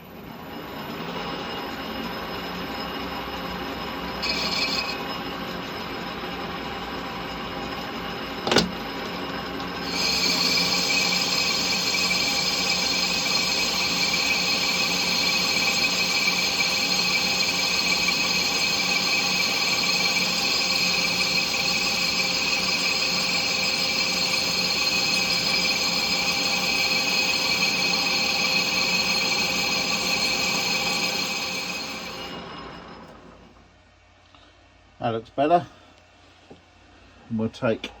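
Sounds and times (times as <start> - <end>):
lathe cutting metal: 0.0 - 33.4
high squealing from cutting: 9.8 - 32.4.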